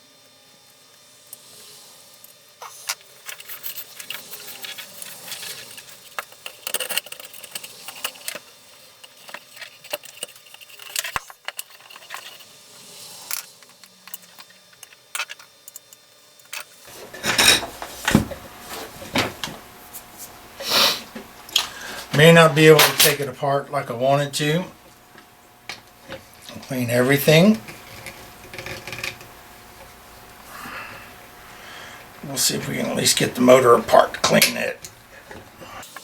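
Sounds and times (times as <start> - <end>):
hand tools clicking: 2.2 - 12.5
parts clattering: 2.3 - 19.6.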